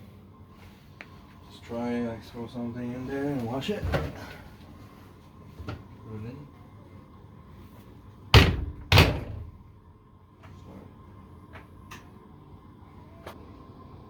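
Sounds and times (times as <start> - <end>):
washer door thudding shut: 8.4 - 9.7.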